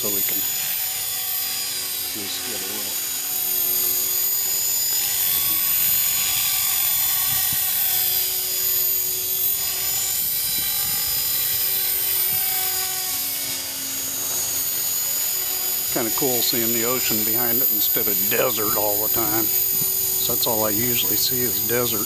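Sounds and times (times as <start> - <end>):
rc helicopter motor whine: 0.0 - 22.0
rotor whirring: 0.0 - 22.0.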